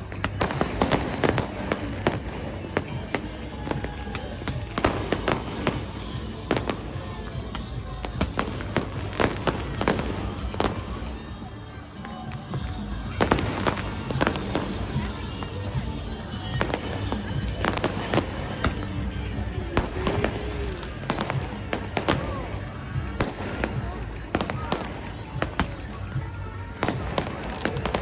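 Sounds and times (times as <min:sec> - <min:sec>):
fireworks bangs and cracks: 0:00.0 - 0:28.0
music playing: 0:00.0 - 0:28.0.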